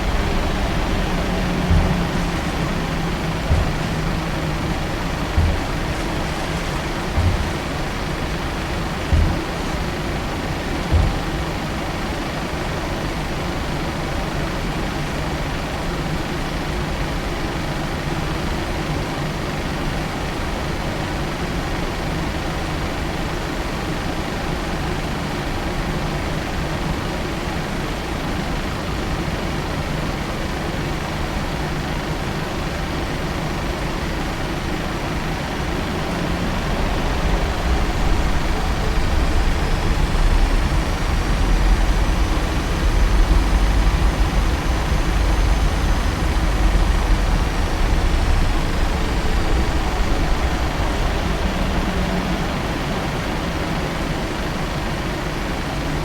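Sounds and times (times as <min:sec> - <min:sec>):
low rumble: 0:00.0 - 0:11.6, 0:35.8 - 0:52.8
jet engines running at low power: 0:00.0 - 0:56.0
cabin air hiss: 0:33.7 - 0:55.0.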